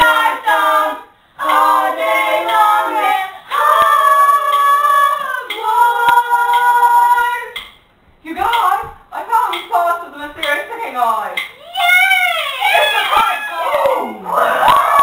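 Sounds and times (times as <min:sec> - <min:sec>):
voices singing a cappella: 0:00.0 - 0:07.7.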